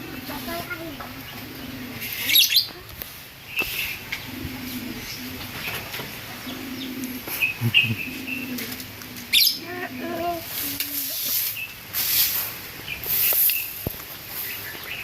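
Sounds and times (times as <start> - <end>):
bird low cooing call: 1.0 - 2.9, 3.6 - 11.2.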